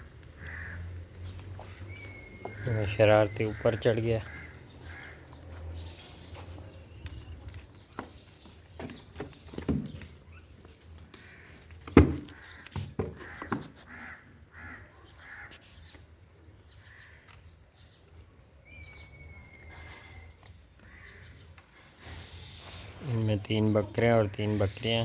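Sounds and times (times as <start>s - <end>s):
crow cawing: 0.0s - 1.0s, 3.5s - 5.4s, 11.2s - 11.6s, 12.4s - 15.5s, 20.8s - 21.3s.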